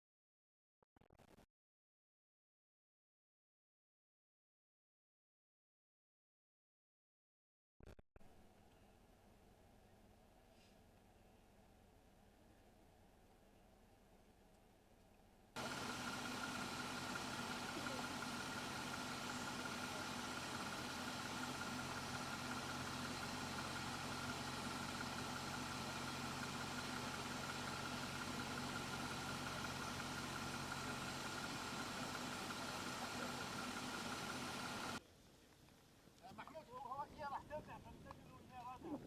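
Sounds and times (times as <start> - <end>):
car engine idling: 15.6 - 35.0.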